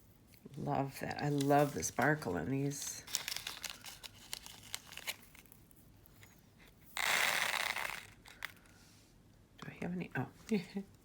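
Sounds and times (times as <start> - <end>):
plastic bag crinkling: 1.0 - 5.8.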